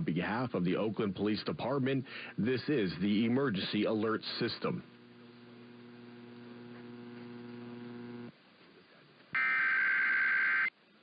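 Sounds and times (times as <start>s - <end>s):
electrical hum: 0.0s - 8.4s, 9.4s - 10.7s
harsh digital data tones: 9.4s - 10.7s.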